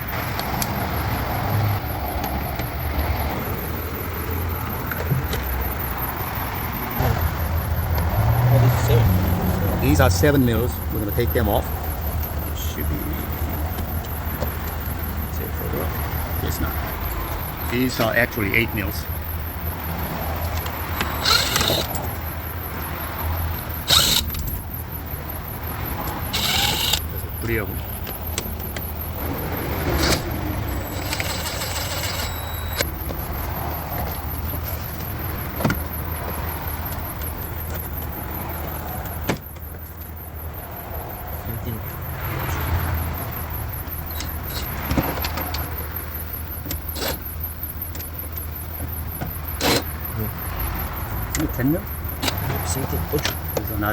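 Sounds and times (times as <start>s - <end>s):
socket ratchet clicking: 20.4s - 22.2s, 23.8s - 24.6s, 26.0s - 27.1s.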